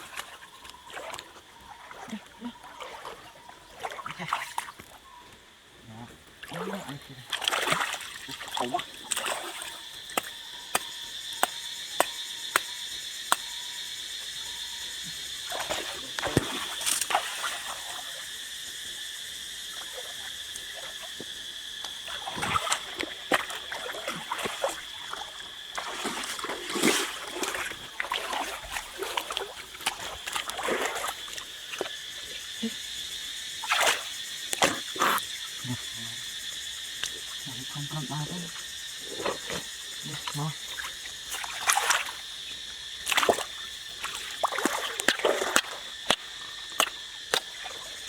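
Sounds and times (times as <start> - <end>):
water splashing and sloshing: 0.0 - 5.4, 6.0 - 13.5, 15.1 - 19.0, 19.7 - 35.2, 36.9 - 48.0
high-pitched insect chorus: 0.0 - 48.0.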